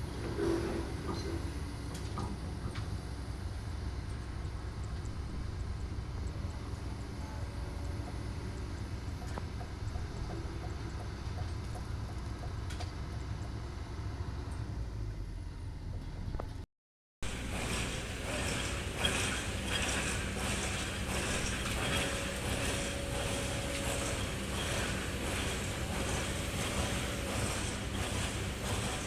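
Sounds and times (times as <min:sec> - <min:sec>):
excavator diesel engine running: 0:17.2 - 0:29.0
steel knocking: 0:17.2 - 0:29.0.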